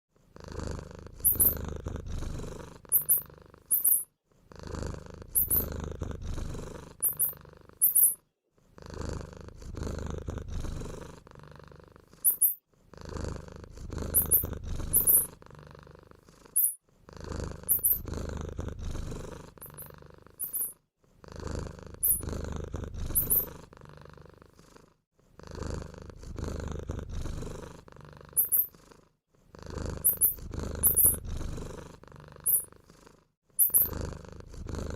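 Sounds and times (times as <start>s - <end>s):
mouse squeaks: 1.2s - 1.6s, 2.9s - 4.1s, 5.4s - 5.7s, 7.0s - 8.2s, 12.2s - 12.6s, 14.2s - 15.3s, 16.6s - 16.8s, 17.7s - 18.0s, 19.6s - 20.8s, 22.0s - 22.3s, 23.2s - 23.5s, 28.4s - 28.7s, 30.0s - 31.2s, 32.5s - 32.7s, 33.6s - 33.9s.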